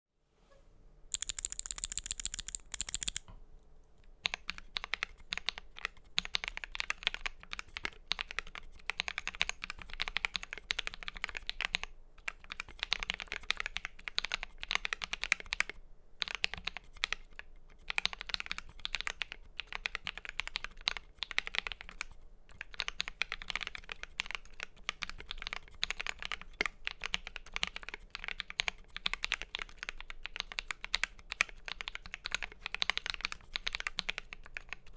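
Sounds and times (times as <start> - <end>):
mechanical keyboard typing: 1.1 - 3.2.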